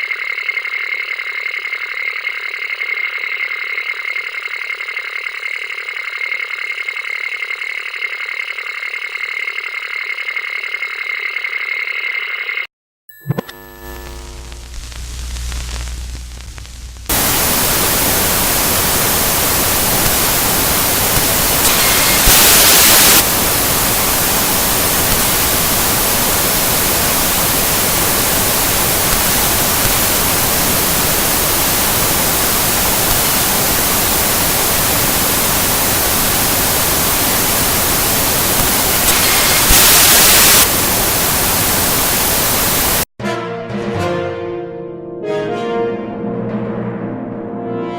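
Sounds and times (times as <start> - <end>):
tv static hiss: 13.8 - 43.1.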